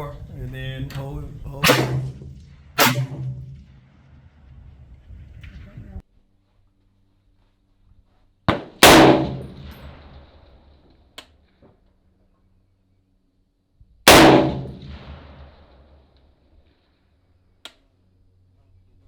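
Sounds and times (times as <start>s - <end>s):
sharp short crack: 0.9s - 3.8s
rifle shots: 1.5s - 5.6s, 8.5s - 10.8s, 14.1s - 16.0s.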